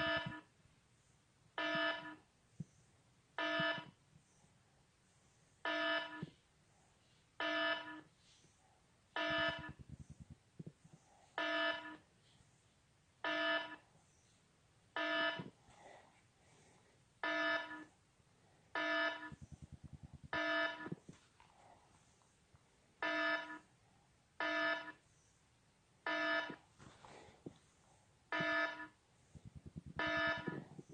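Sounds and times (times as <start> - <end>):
electronic alarm beeps: 0.0 - 0.5, 1.6 - 2.2, 3.4 - 4.0, 5.6 - 6.3, 7.4 - 8.1, 9.2 - 10.0, 11.4 - 12.0, 13.2 - 13.8, 15.0 - 15.6, 17.2 - 17.9, 18.8 - 19.6, 20.2 - 21.0, 23.0 - 23.7, 24.4 - 25.0, 26.1 - 26.6, 28.3 - 29.0, 29.8 - 30.9.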